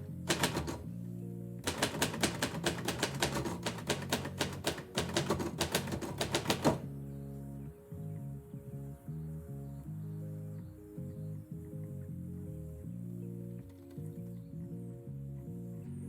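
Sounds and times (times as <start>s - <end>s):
background music: 0.0s - 16.0s
typewriter typing: 0.2s - 0.9s, 1.6s - 6.9s.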